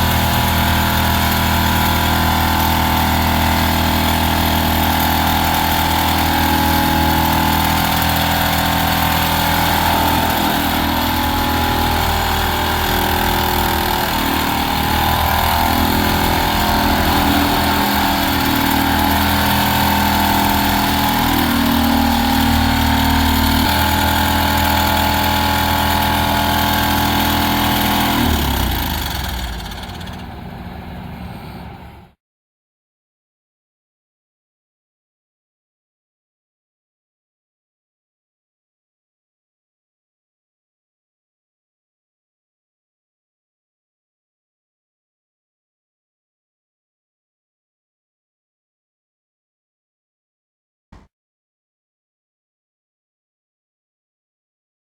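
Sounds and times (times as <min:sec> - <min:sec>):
vibratory pile driver drone: 0:00.0 - 0:32.1
excavator engine: 0:00.0 - 0:32.2.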